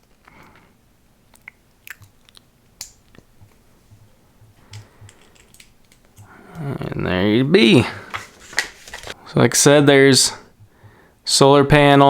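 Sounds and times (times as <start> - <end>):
plastic pieces clicking: 4.7 - 6.7.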